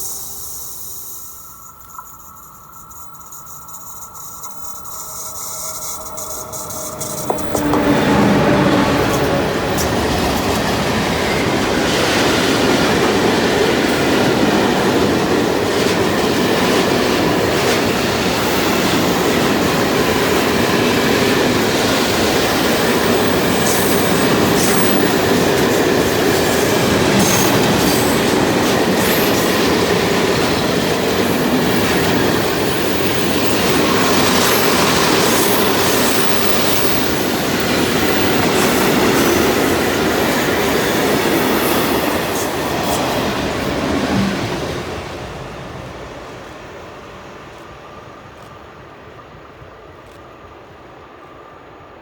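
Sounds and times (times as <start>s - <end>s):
high wheel squeal: 0.0s - 12.3s
train wheels rumbling on rails: 0.0s - 52.0s.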